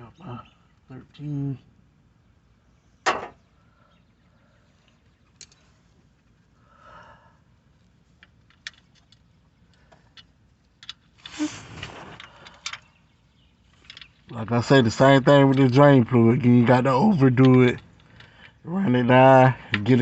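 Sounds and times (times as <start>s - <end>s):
rustling clatter: 8.0s - 14.4s.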